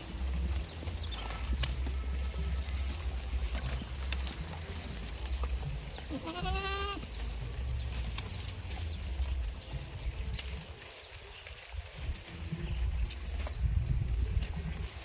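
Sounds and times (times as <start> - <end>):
steady low rumble: 0.0 - 15.0
goat bleating: 0.1 - 8.6.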